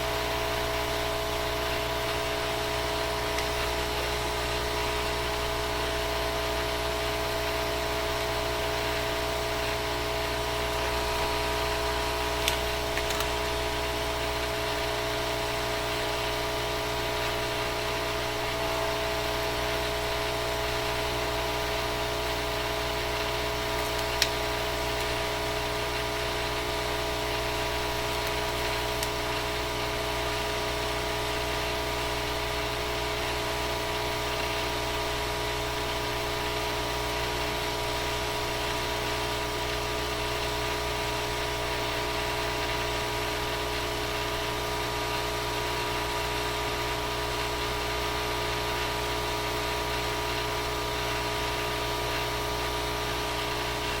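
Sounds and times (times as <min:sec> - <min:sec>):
steady machine hum: 0:00.0 - 0:54.0
sharp clicks: 0:12.4 - 0:13.6, 0:23.7 - 0:25.3.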